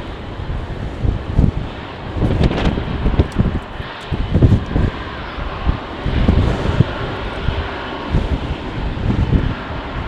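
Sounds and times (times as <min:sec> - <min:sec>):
jet engine rushing: 0:00.0 - 0:10.0
wind buffeting microphone: 0:00.0 - 0:10.0.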